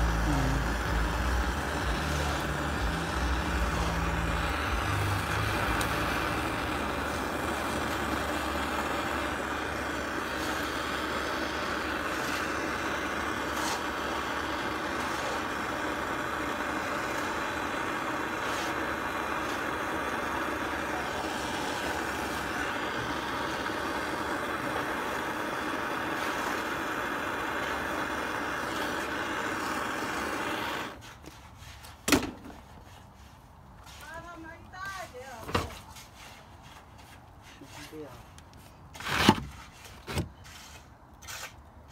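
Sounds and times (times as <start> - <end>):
gas torch hissing: 0.0 - 31.3.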